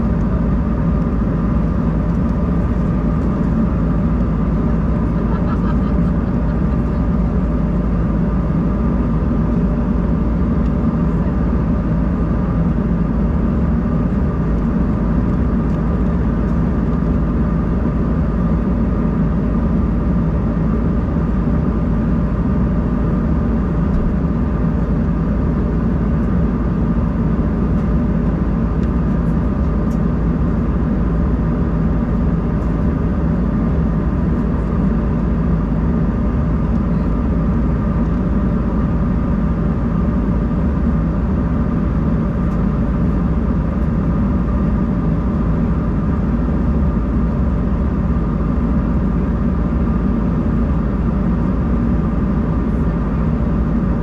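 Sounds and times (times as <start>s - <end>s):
airliner cabin engine rumble: 0.0s - 54.0s.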